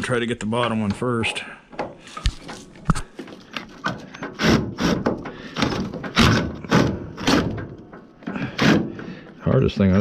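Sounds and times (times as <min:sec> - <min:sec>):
hand tool scraping metal: 0:03.6 - 0:09.7.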